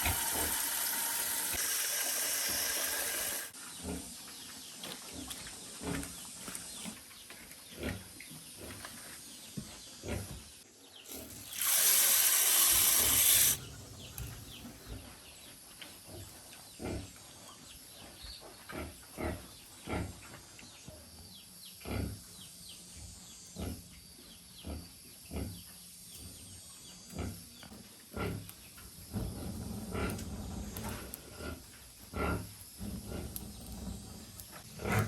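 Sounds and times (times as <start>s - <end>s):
pigs grunting: 27.1s - 28.5s, 29.1s - 35.0s.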